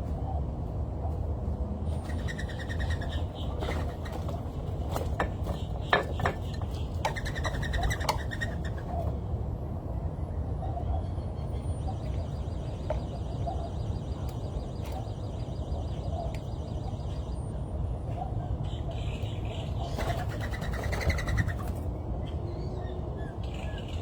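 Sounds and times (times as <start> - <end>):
birds chirping: 1.9 - 9.1.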